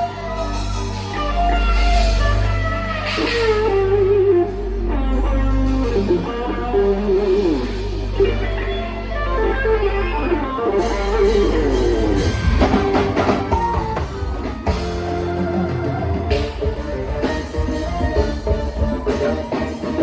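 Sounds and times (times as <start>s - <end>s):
drum kit: 0.0s - 4.4s, 10.8s - 20.0s
electric guitar lead melody: 0.0s - 20.0s
sustained low bass: 0.0s - 20.0s.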